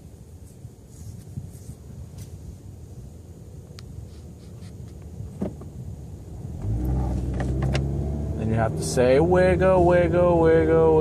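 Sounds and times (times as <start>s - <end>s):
engine hum: 4.9s - 11.0s
car cabin rumble: 5.2s - 11.0s.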